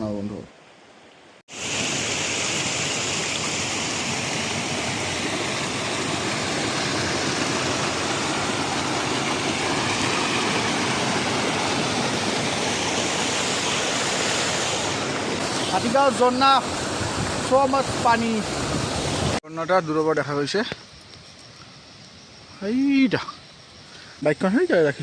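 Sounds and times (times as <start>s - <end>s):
waterfall rushing: 1.5s - 19.4s.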